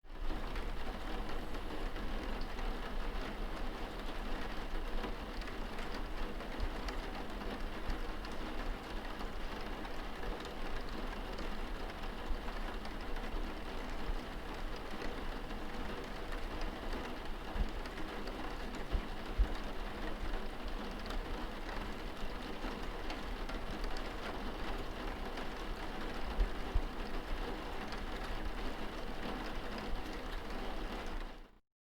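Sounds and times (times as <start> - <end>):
rain pattering on a skylight: 0.1 - 31.6.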